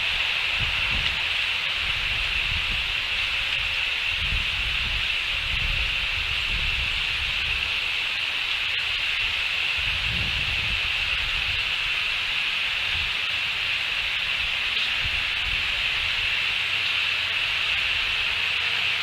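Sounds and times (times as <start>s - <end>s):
wind buffeting microphone: 0.0s - 7.9s, 9.0s - 13.2s, 13.9s - 16.5s
high-pitched hiss: 0.0s - 19.0s.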